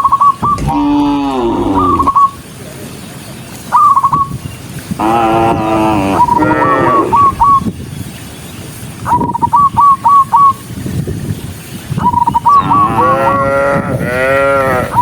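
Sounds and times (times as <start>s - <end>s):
cattle mooing: 0.6s - 2.3s, 5.0s - 7.2s, 12.8s - 15.0s.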